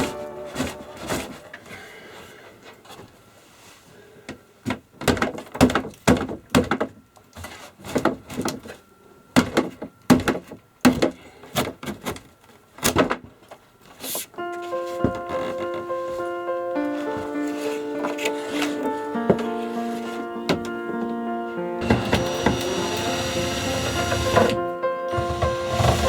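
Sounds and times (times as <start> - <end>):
knocks and thuds indoors: 25.2 - 26.0.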